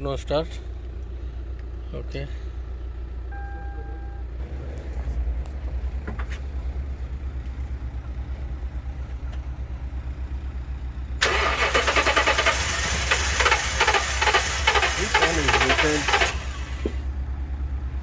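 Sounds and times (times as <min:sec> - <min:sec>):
starter motor cranking engine: 0:11.2 - 0:17.0.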